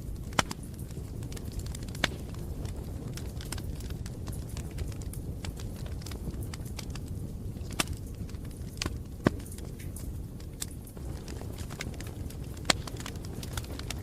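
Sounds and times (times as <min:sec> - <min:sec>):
campfire crackling and popping: 0:00.0 - 0:14.0.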